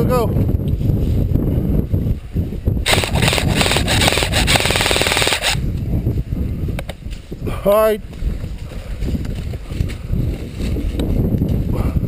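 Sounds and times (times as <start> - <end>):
airsoft rifle automatic fire: 2.9 - 5.6.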